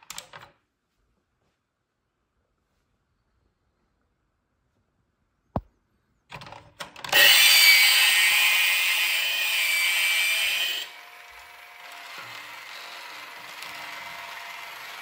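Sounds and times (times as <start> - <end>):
small electric motor whirring: 7.1 - 15.0.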